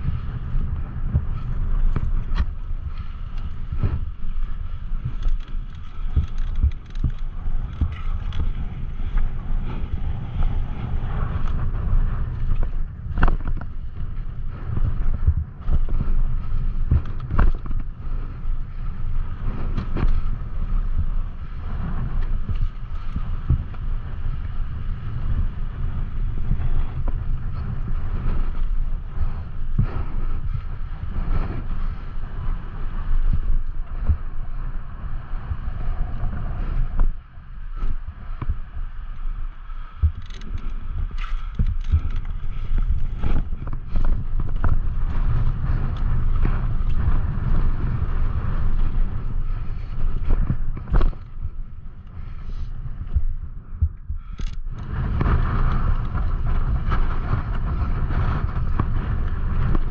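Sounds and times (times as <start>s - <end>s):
bike clacking and rattling: 0.0s - 18.1s, 40.0s - 51.4s
wind rumble on microphone: 0.0s - 59.9s.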